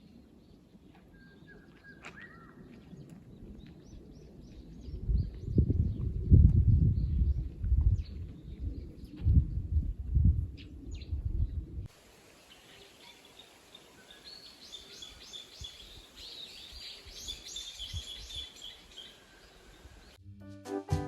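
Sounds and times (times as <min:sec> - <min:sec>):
songbird chirping: 0:00.0 - 0:09.4, 0:12.3 - 0:20.2
music: 0:20.2 - 0:21.0.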